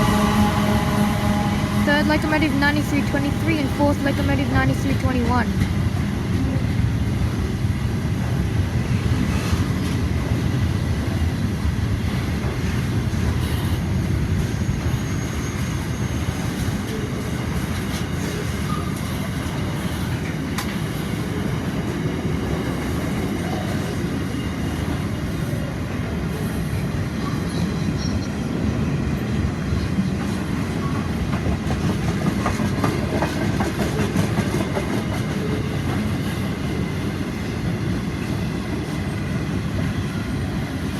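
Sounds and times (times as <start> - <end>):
train wheels rumbling on rails: 0.0 - 40.9.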